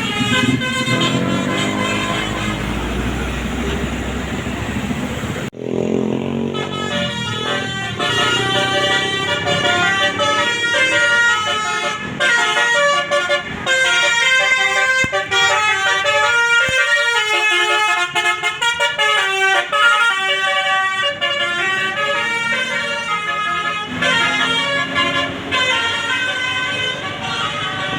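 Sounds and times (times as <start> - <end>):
musical bus air horn: 0.0 - 4.1, 6.4 - 27.9.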